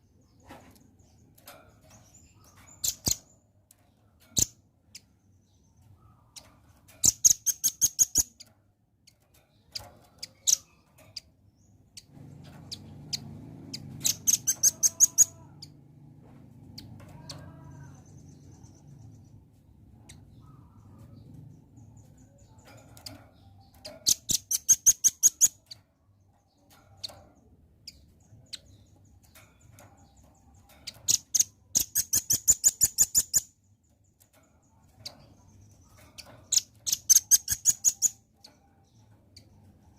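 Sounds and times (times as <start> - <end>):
bird chipping calls: 12.7 - 15.8, 35.6 - 39.5.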